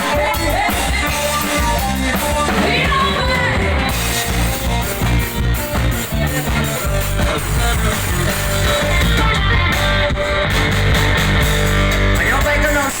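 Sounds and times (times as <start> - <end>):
band music with guitar: 0.0 - 13.0.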